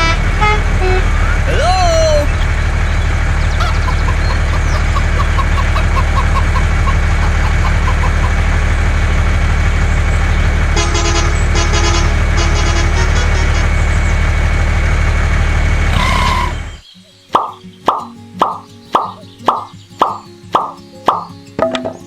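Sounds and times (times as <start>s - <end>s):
horn honking: 0.0s - 8.5s, 10.0s - 15.1s, 15.8s - 16.8s
vehicle engine running: 0.0s - 16.8s.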